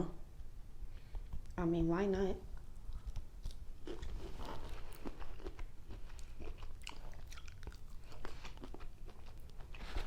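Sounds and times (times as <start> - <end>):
person chewing: 2.8 - 10.0.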